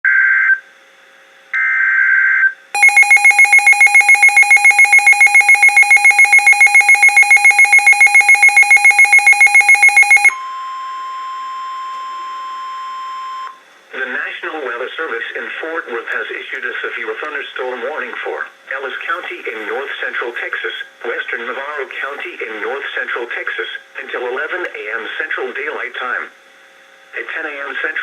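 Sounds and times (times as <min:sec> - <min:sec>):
rapidly pulsing alarm beeping: 0:02.8 - 0:10.4
steady warning alarm tone: 0:02.8 - 0:11.7.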